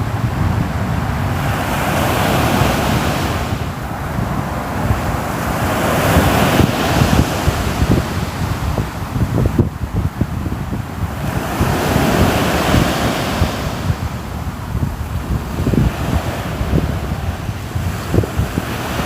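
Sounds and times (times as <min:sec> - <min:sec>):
ocean waves breaking on shore: 0:00.0 - 0:19.0
wind: 0:00.0 - 0:19.0.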